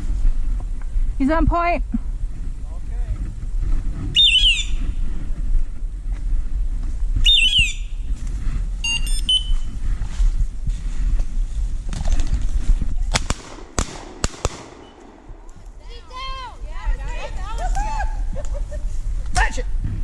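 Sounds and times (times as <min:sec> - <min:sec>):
short electronic beep: 0:08.8 - 0:09.6.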